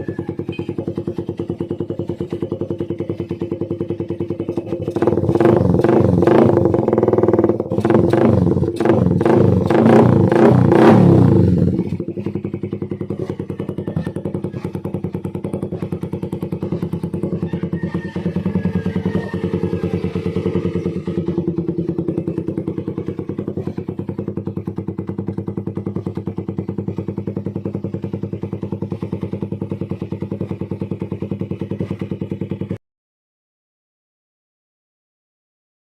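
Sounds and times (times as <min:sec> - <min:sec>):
motorcycle engine revving and idling: 0:00.0 - 0:32.8.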